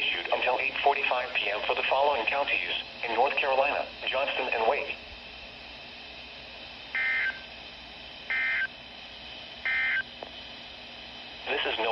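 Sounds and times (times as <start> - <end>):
data tone bursts: 7.0 - 7.4, 8.3 - 8.7, 9.7 - 10.1.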